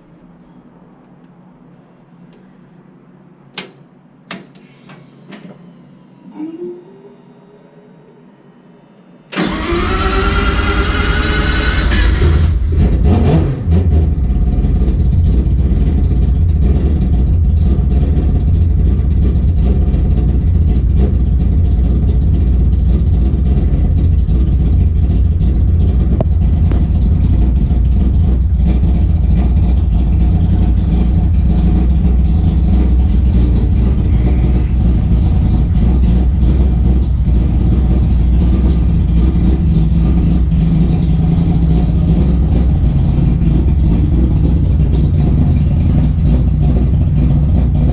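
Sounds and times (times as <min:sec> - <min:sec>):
rotary engine idling: 0:13.9 - 0:47.9.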